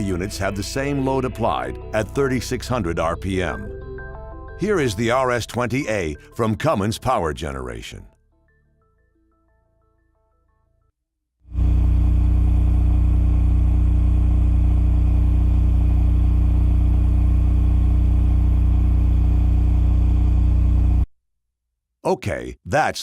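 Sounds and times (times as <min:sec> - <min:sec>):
generator running under load: 0:11.5 - 0:21.0.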